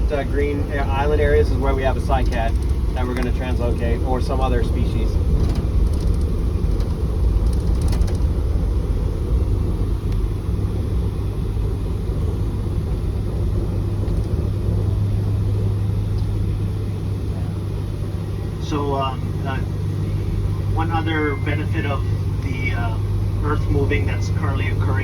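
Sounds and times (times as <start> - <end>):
faint rattles: 0.0 - 18.8
vehicle rumbling over rough ground: 0.0 - 25.0.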